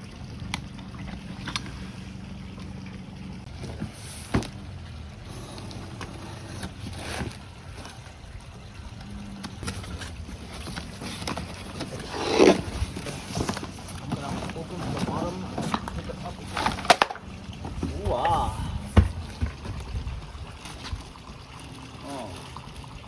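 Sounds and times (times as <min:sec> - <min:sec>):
knocks and scrapes of box: 0:09.6 - 0:15.9
cardboard rustle: 0:09.6 - 0:17.9.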